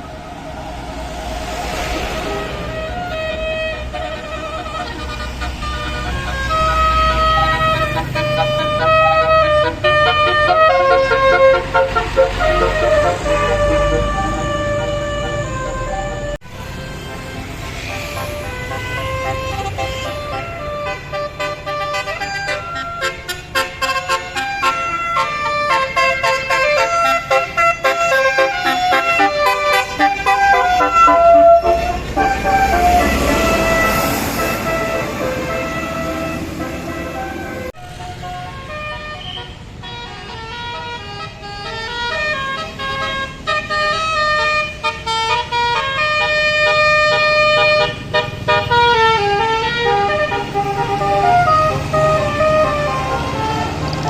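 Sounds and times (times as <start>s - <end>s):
low engine rumble: 0.0s - 21.4s, 28.8s - 39.3s
bus horn playing fast melody: 1.0s - 54.0s.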